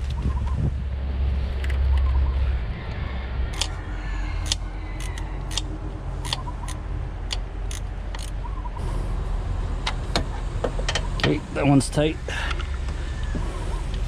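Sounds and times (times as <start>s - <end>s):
ratchet wrench clicking: 3.5s - 3.7s, 4.4s - 8.4s
steady low hum: 5.2s - 14.0s.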